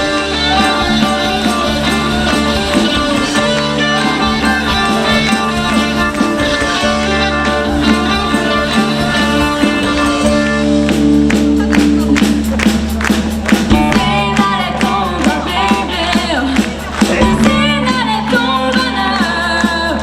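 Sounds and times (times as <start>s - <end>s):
person singing: 0.0s - 10.6s, 13.7s - 20.0s
drums: 0.0s - 20.0s
guitar chords: 0.0s - 20.0s.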